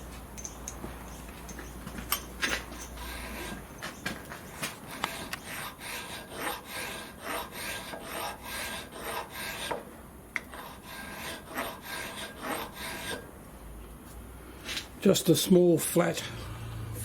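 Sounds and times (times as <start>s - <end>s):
file rasping on metal: 4.9s - 13.3s.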